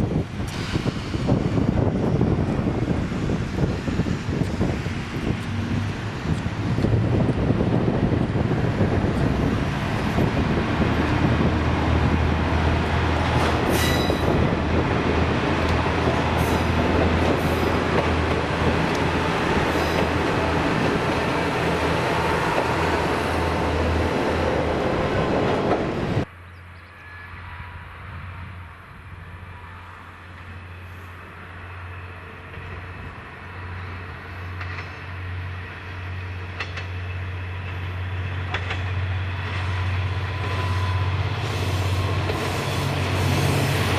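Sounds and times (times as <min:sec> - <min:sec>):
diesel railcar passing: 0:00.0 - 0:43.9
high wheel squeals: 0:13.7 - 0:14.4.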